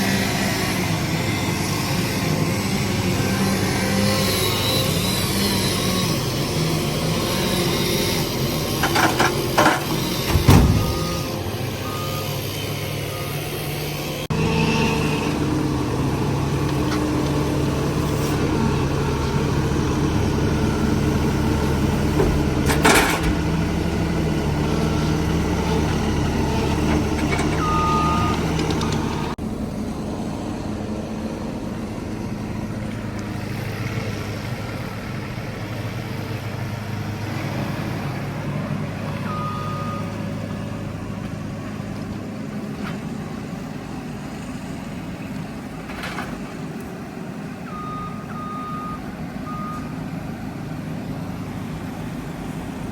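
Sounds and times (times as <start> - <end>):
heavy equipment engine running: 0.0 - 52.9
brief beeps: 10.7 - 12.3, 47.7 - 49.9.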